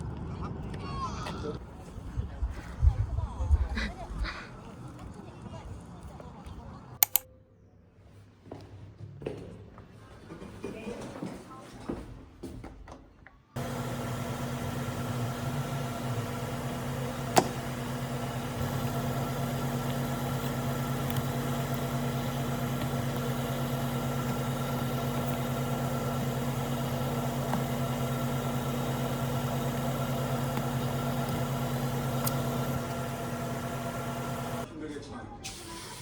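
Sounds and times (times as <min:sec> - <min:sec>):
sharp click: 0:07.0 - 0:07.2
steady mechanical hum: 0:13.6 - 0:34.7.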